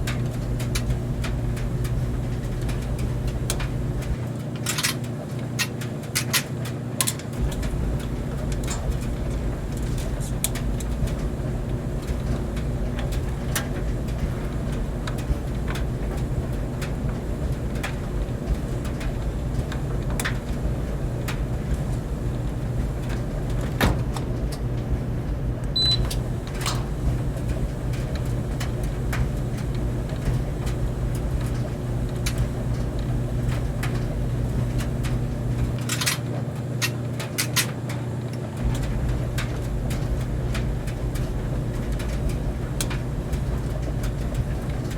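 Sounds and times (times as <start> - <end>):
clothes dryer humming: 0.0 - 44.9.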